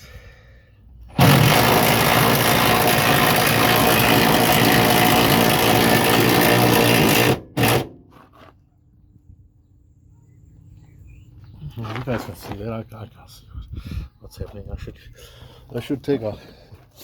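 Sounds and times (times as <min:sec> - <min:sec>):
impact driver whirring: 0:01.1 - 0:08.1.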